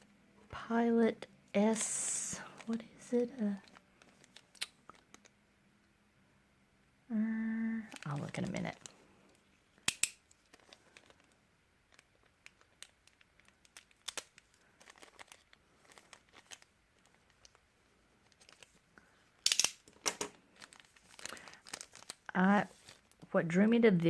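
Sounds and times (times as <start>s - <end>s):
packaging crinkling and tearing: 3.5s - 5.3s, 10.2s - 23.2s.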